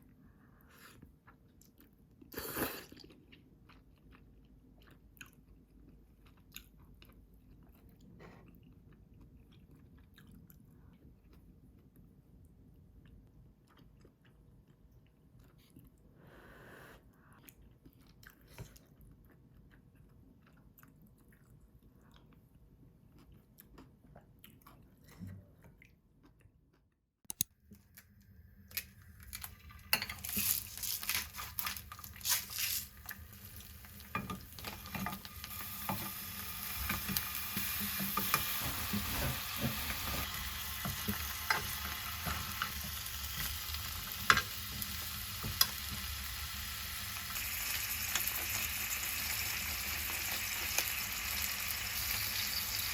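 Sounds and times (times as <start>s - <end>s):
food sizzling in a pan: 29.9s - 52.9s.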